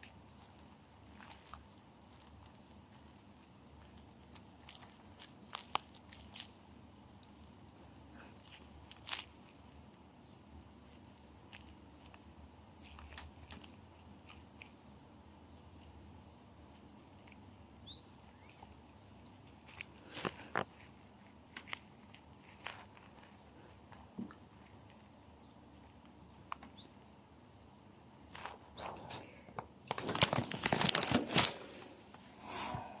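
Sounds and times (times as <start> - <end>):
tiny bird calling: 4.6 - 7.5, 10.2 - 20.9, 25.3 - 27.6, 28.3 - 29.5, 31.1 - 32.3.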